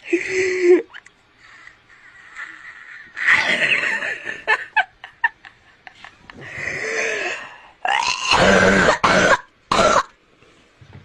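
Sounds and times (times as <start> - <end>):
person coughing: 8.2 - 10.1.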